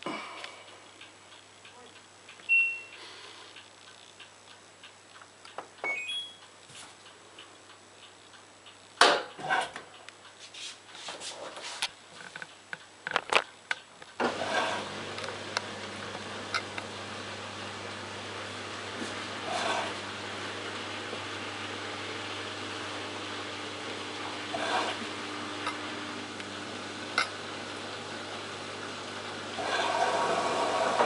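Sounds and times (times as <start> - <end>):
button beep: 2.5 - 2.9, 5.8 - 6.4
washing machine rushing hum: 14.2 - 31.0.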